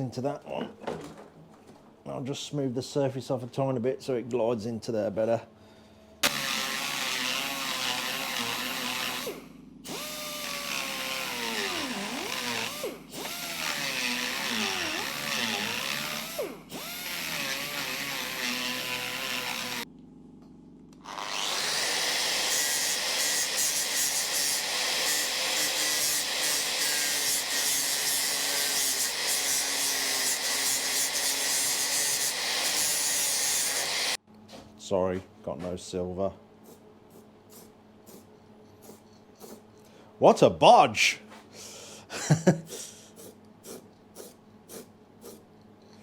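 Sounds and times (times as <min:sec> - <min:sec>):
power tool motor whine: 0:06.2 - 0:19.9, 0:21.0 - 0:34.2
hissy grinding or sanding: 0:36.6 - 0:39.6, 0:42.7 - 0:45.4.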